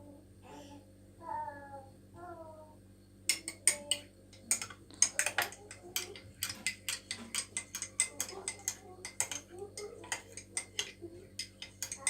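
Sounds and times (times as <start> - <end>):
spoon clinking in a cup: 3.3 - 12.0.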